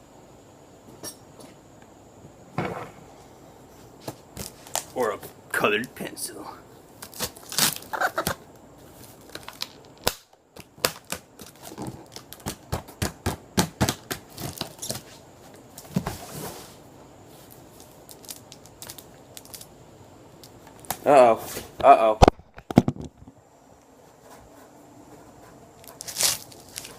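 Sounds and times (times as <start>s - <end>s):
cardboard scraping rustle: 15.8s - 17.6s.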